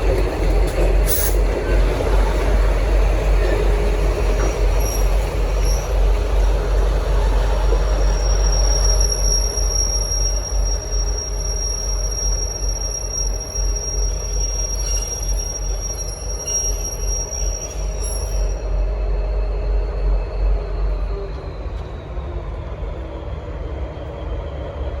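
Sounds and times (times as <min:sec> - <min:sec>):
diesel locomotives rumbling: 0:00.0 - 0:25.0
high wheel squeal: 0:04.3 - 0:18.9.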